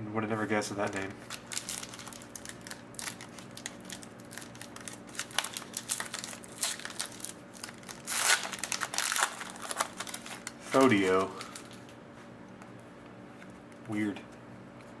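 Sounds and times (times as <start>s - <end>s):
cards and wrapper crinkling: 0.8s - 11.9s.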